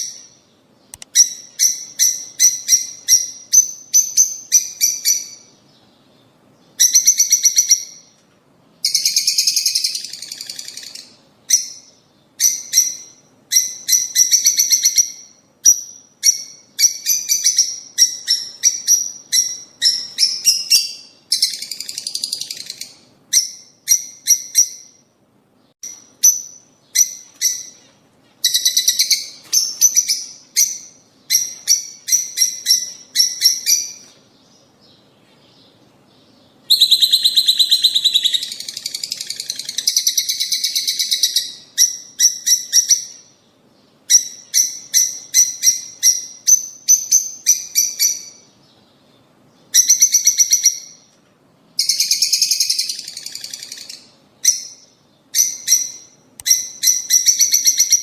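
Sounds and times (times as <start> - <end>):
lovebirds chattering: 25.8 - 51.1.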